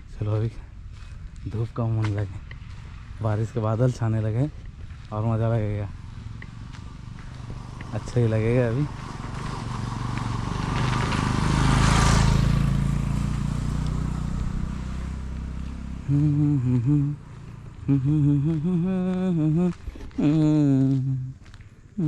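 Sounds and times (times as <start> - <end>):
vehicle engine driving past: 0.8 - 22.0
man humming a tune: 16.0 - 21.4.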